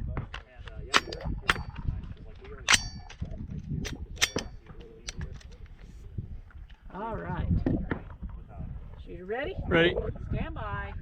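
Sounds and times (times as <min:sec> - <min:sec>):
rifle action clacking: 0:00.9 - 0:01.9, 0:02.6 - 0:05.8
metallic ring: 0:02.7 - 0:03.2, 0:04.2 - 0:04.6.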